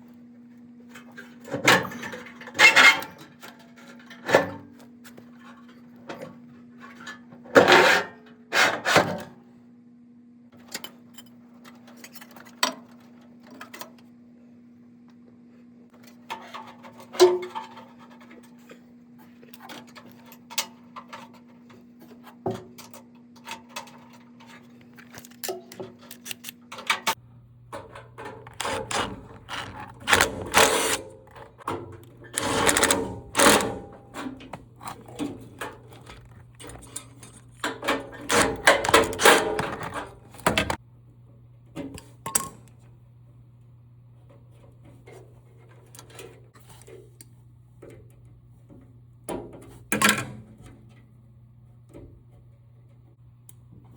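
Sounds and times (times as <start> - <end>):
metal parts clanking and scraping: 0.9 - 4.6, 10.6 - 13.9, 16.0 - 40.8
steady low hum: 13.0 - 53.9.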